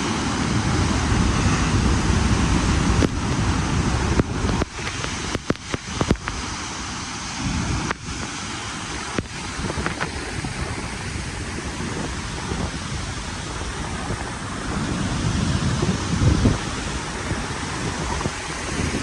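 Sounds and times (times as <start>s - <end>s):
rush of open water: 0.0s - 19.0s
wind buffeting microphone: 0.0s - 19.0s
sharp clicks: 3.0s - 3.4s, 4.2s - 6.4s.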